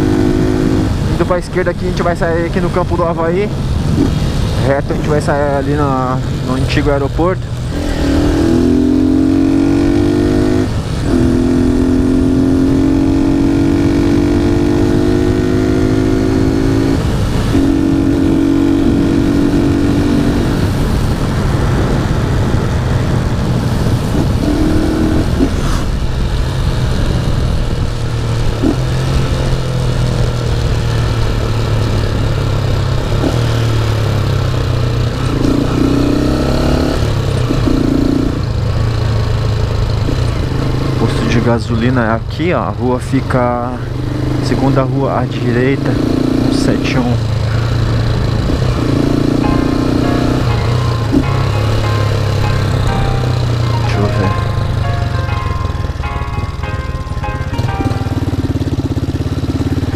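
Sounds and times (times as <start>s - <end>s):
motorcycle engine accelerating: 0.0s - 59.9s
wind noise on microphone: 16.8s - 29.2s.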